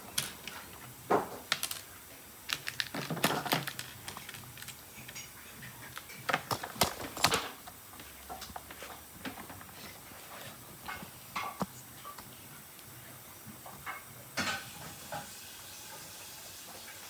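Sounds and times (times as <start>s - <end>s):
plastic bricks clicking and clattering: 1.3s - 1.9s, 2.5s - 5.3s, 5.9s - 7.6s.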